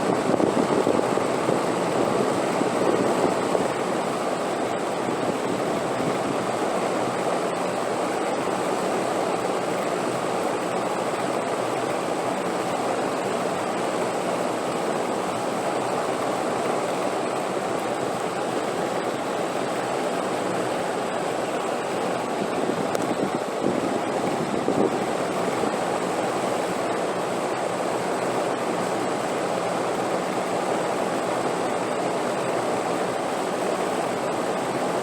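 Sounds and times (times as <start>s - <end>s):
steady wind rushing: 21.0s - 26.0s.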